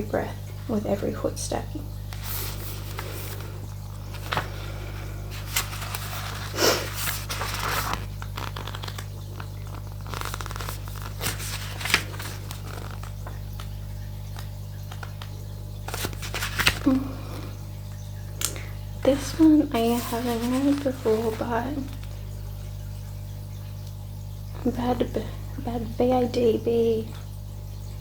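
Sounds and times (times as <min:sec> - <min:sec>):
cards being shuffled: 0:02.1 - 0:17.1, 0:18.4 - 0:22.2.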